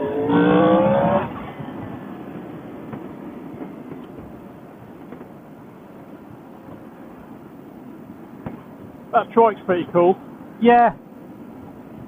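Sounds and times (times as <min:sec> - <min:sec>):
wind and road noise: 0:00.0 - 0:12.0.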